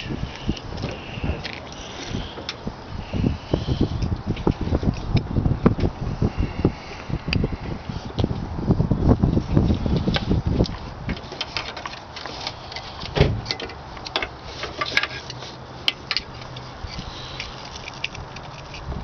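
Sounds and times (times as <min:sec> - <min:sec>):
plastic parts clicking and rattling: 0:11.1 - 0:19.0.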